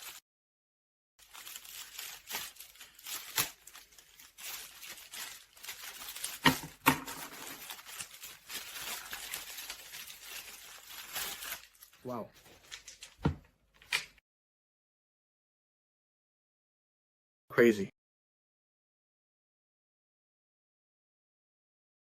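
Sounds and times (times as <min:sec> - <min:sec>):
plastic packaging crinkling: 0:00.0 - 0:00.2, 0:01.2 - 0:14.1.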